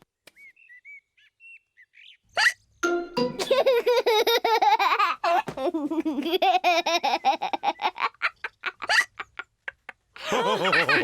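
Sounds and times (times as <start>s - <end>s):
cartoon characters laughing: 3.2s - 11.0s.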